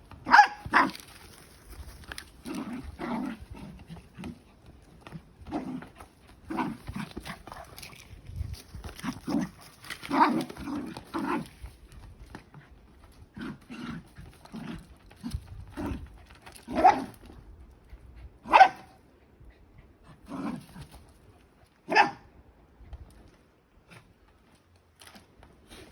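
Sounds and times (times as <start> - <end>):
dog barking: 0.3 - 0.9, 18.5 - 18.9, 21.9 - 22.2.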